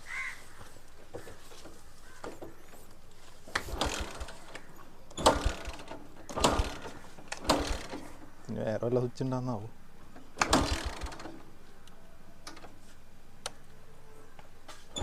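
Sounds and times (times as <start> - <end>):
mechanical rattling and clanking: 3.5 - 8.3, 10.1 - 11.5.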